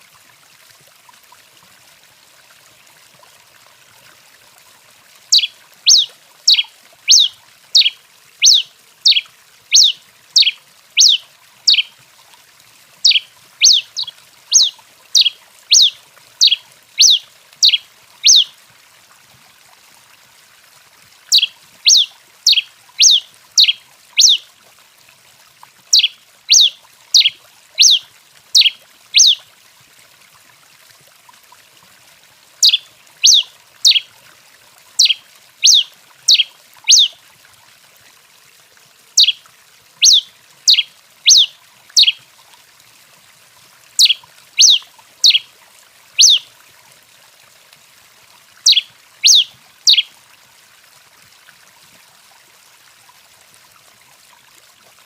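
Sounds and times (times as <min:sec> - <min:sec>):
faint steady hiss: 0:00.0 - 0:55.0
finch singing sharp notes: 0:05.3 - 0:11.9, 0:13.0 - 0:18.5, 0:21.3 - 0:24.4, 0:26.0 - 0:28.0, 0:28.6 - 0:29.4, 0:32.6 - 0:34.0, 0:35.0 - 0:37.1, 0:40.0 - 0:42.2, 0:44.0 - 0:45.4, 0:46.2 - 0:46.4, 0:48.7 - 0:50.1.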